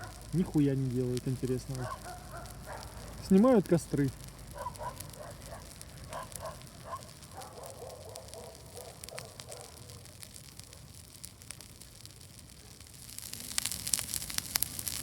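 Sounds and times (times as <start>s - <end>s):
distant dogs barking: 0.0s - 0.6s, 1.7s - 3.4s, 4.4s - 10.9s
bonfire crackling and popping: 0.0s - 15.0s.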